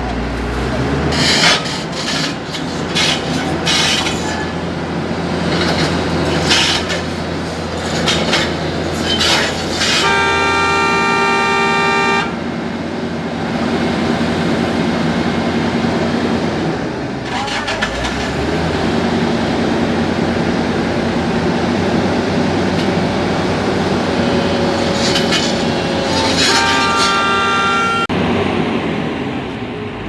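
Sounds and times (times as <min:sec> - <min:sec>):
excavator diesel engine running: 0:00.0 - 0:30.0
knocks and scrapes: 0:00.4 - 0:12.4, 0:24.6 - 0:28.1
steady horn: 0:09.4 - 0:12.6, 0:24.7 - 0:28.1.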